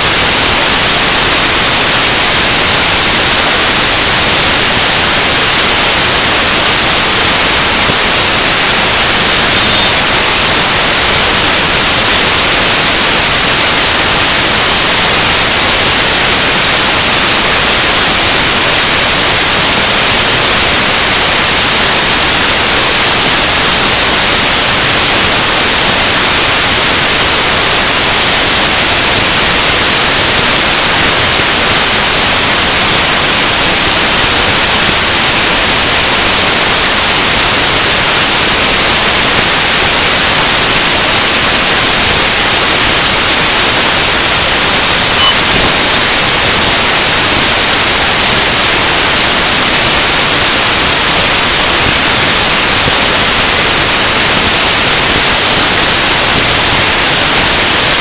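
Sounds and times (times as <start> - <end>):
harsh static noise music: 0.0 - 58.0.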